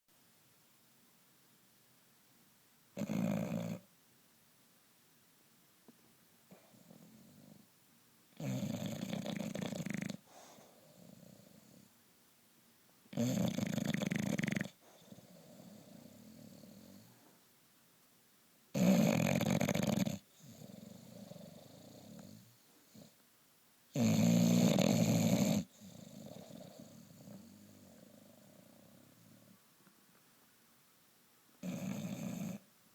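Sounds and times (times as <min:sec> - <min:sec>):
dog snoring loudly: 0:03.0 - 0:03.9, 0:08.4 - 0:11.9, 0:13.1 - 0:17.1, 0:18.7 - 0:23.1, 0:23.9 - 0:29.5, 0:31.6 - 0:32.7
dog breathing softly: 0:09.1 - 0:12.0.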